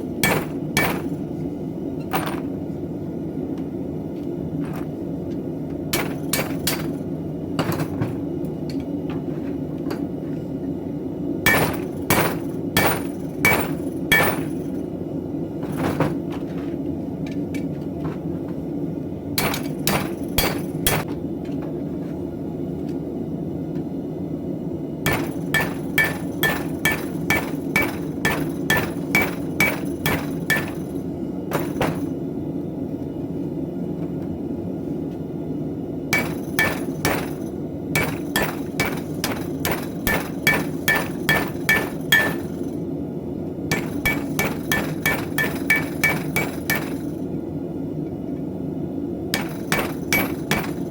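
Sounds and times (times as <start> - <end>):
steady low hum: 0.0 - 50.9
hammer ringing on anvil: 0.2 - 1.2, 11.5 - 14.7, 19.4 - 21.0, 25.1 - 31.0, 36.2 - 37.4, 38.0 - 42.6, 43.7 - 47.1, 49.4 - 50.9.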